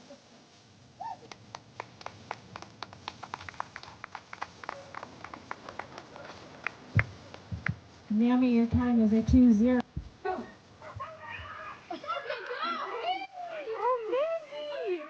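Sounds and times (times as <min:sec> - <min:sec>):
people clapping: 0:01.1 - 0:07.8.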